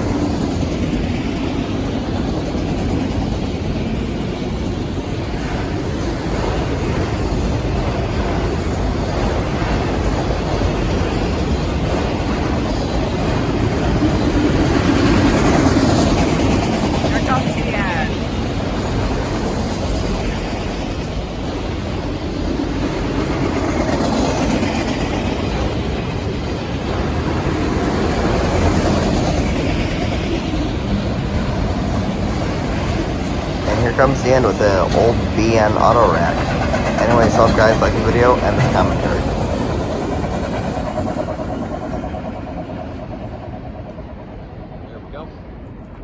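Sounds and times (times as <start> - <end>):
train wheels rumbling on rails: 0.0 - 46.0.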